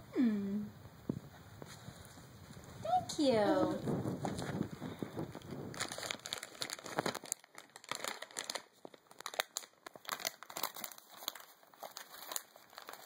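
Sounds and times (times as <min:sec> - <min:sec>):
bag crinkling: 0:03.9 - 0:13.0.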